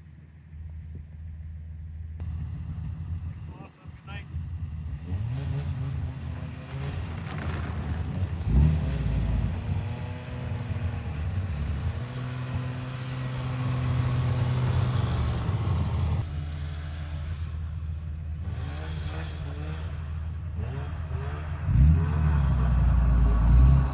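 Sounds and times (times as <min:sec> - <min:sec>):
engine running at low revs: 0:00.0 - 0:23.9
engine revving: 0:02.2 - 0:23.9.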